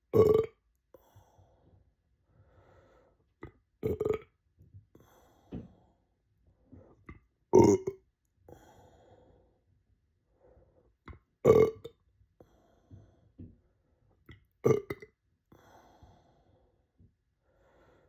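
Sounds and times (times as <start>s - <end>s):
person burping loudly: 0.1s - 0.6s, 3.8s - 4.3s, 7.6s - 8.0s, 11.5s - 11.9s, 14.6s - 15.0s.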